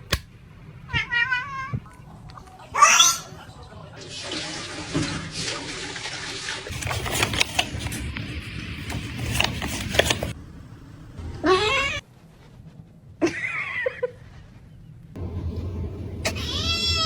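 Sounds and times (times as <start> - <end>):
clattering noise: 6.7 - 10.4
cat meowing: 11.4 - 12.0, 16.3 - 17.0.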